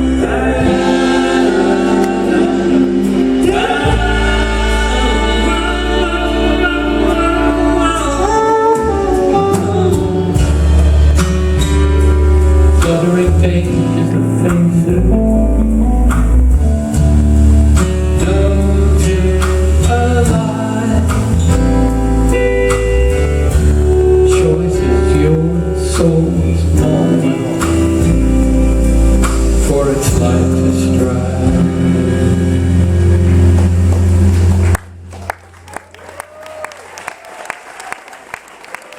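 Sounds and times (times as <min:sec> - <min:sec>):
person singing: 0:00.0 - 0:16.6, 0:17.8 - 0:33.8
guitars and bass: 0:00.0 - 0:36.4.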